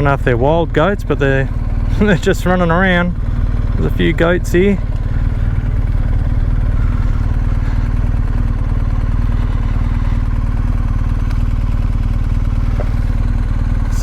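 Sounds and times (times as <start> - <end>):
motorcycle engine running steadily: 0.0 - 14.0.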